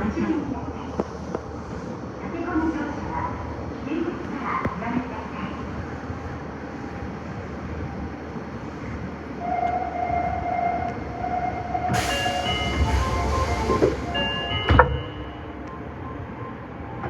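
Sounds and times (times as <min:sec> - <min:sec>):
loud hiss: 0:12.0 - 0:14.8
steady tone: 0:12.0 - 0:15.8.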